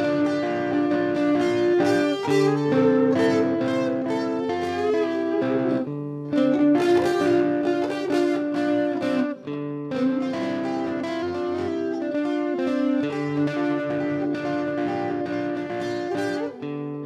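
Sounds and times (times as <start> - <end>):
plucked guitar music: 0.0 - 17.0.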